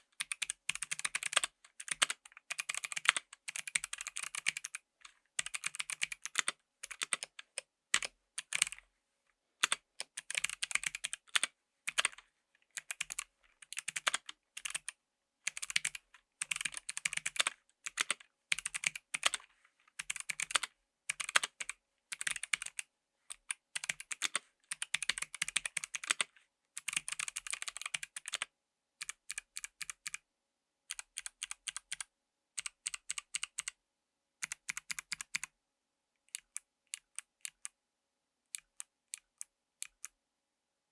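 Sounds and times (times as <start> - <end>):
clicky keyboard typing: 0.2 - 4.8, 5.4 - 8.8, 9.6 - 12.2, 12.8 - 19.4, 20.0 - 30.2, 30.9 - 33.8, 34.4 - 35.5.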